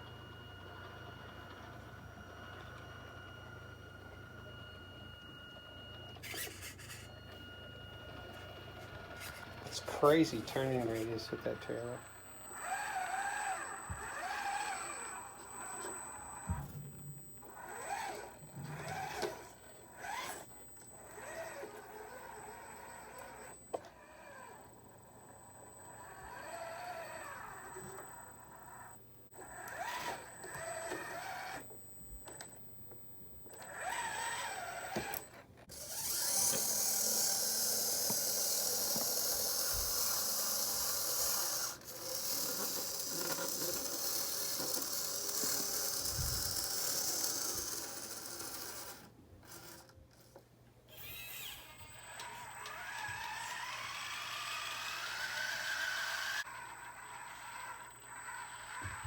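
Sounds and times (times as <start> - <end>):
small electric motors whining: 0.0 - 59.0.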